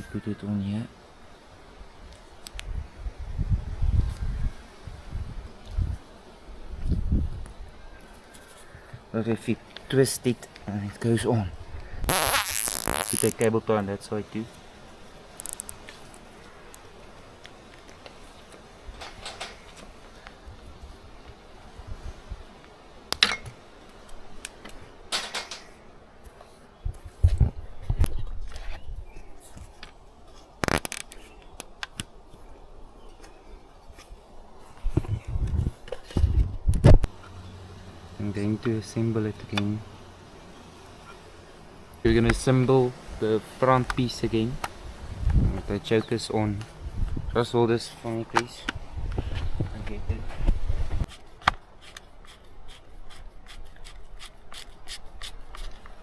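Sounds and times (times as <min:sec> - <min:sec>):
rubbing of motor parts: 0:49.2 - 0:56.0.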